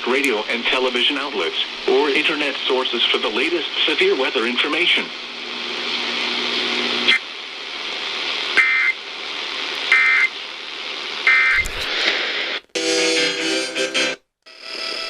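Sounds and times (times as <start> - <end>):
steady hum: 0.0 - 12.5
radio static: 0.0 - 12.6
shrill data bursts: 9.9 - 10.3.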